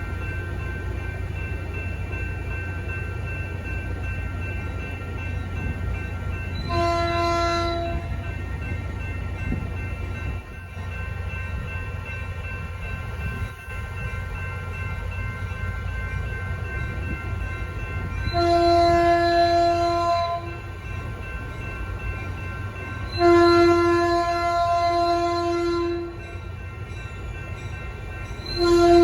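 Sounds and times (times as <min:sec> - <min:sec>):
crossing bells ringing: 0:00.0 - 0:29.0
train horn blasts: 0:06.6 - 0:08.2, 0:18.3 - 0:20.6, 0:23.1 - 0:26.2, 0:28.6 - 0:29.0.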